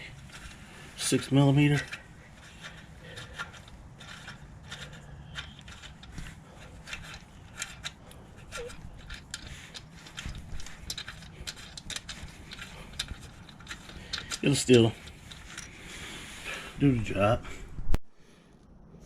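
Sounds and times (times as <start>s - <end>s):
small metal parts clicking: 0.0s - 16.0s.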